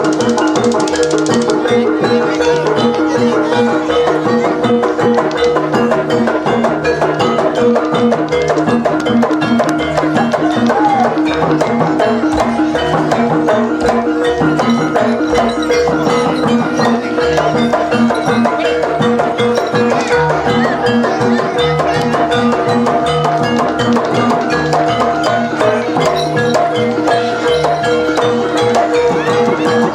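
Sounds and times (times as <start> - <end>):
drums and mallet percussion: 0.0 - 29.9
sustained pitched tones: 12.0 - 29.6.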